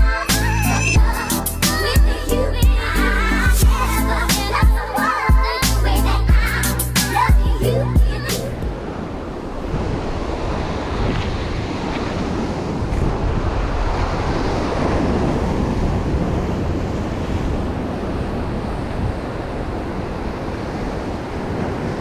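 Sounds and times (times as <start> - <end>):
wind buffeting microphone: 7.5 - 22.0
ocean surf on rocks: 8.2 - 22.0.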